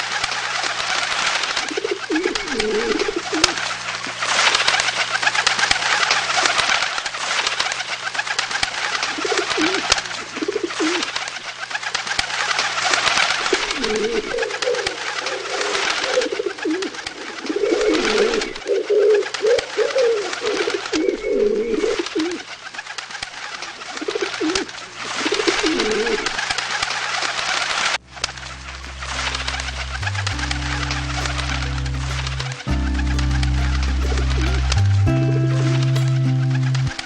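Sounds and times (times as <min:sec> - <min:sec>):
pigeons cooing: 0:01.8 - 0:03.6, 0:13.5 - 0:18.8
steady rustling hiss: 0:28.0 - 0:37.0.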